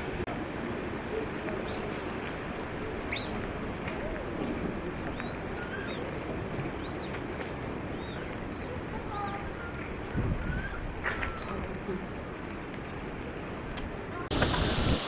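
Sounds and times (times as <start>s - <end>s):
steady background hiss: 0.0s - 15.0s
small bird chirping: 1.6s - 2.0s, 3.1s - 3.4s, 5.1s - 7.2s, 7.9s - 9.5s.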